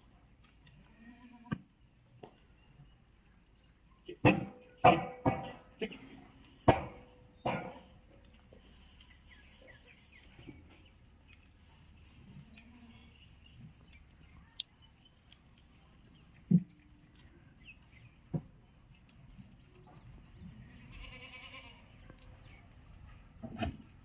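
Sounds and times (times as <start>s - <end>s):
goat bleat: 20.6s - 21.9s.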